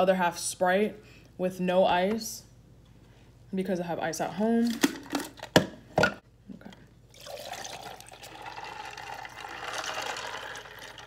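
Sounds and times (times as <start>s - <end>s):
drink pouring into a glass: 7.1s - 11.0s.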